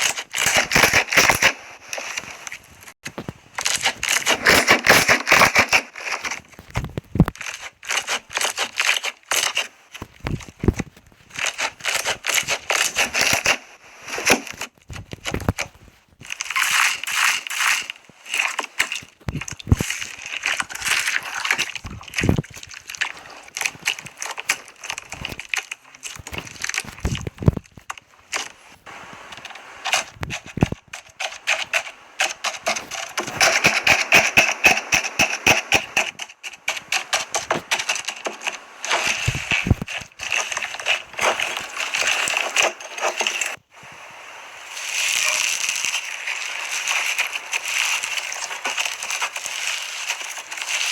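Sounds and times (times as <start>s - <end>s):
slime crackling and popping: 16.3s - 28.5s, 44.7s - 50.9s.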